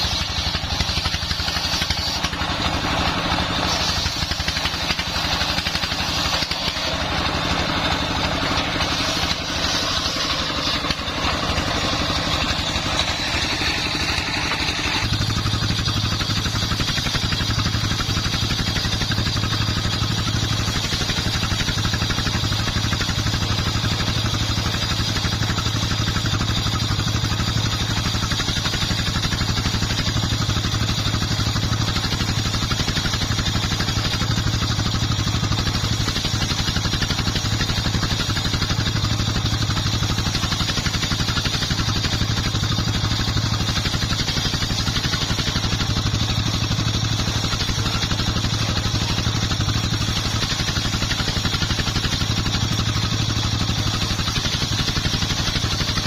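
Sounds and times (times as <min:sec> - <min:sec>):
circular saw noise: 0:00.0 - 0:19.2
diesel engine running: 0:00.0 - 0:56.0.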